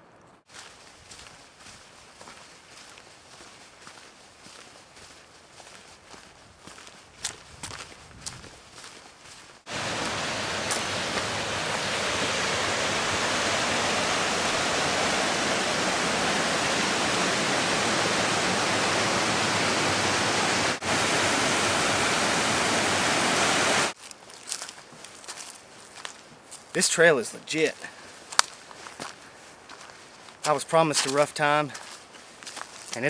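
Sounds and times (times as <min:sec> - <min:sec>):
rushing water: 0:09.7 - 0:24.0.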